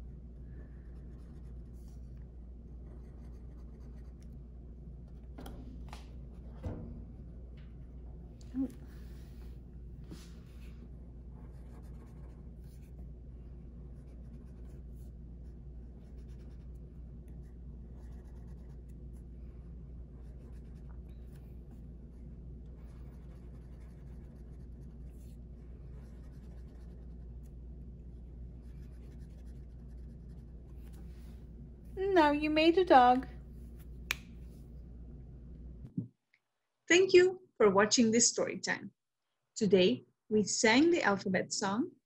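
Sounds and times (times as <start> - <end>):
steady low hum: 0.0 - 36.1
marker scratching on paper: 1.0 - 4.3, 11.3 - 13.0, 13.9 - 19.2, 22.6 - 27.6, 28.6 - 31.2.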